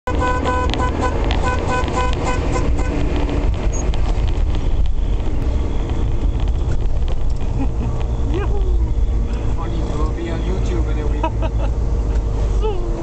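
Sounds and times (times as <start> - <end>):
engine and road noise: 0.0 - 13.0
vehicle horn short toots: 0.1 - 3.0.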